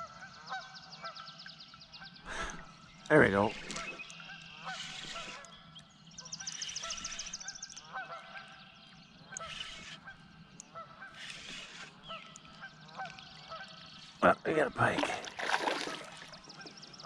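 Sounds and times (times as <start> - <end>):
geese honking: 0.0 - 1.2, 3.1 - 5.6, 6.3 - 13.9
songbird trill: 0.0 - 17.0.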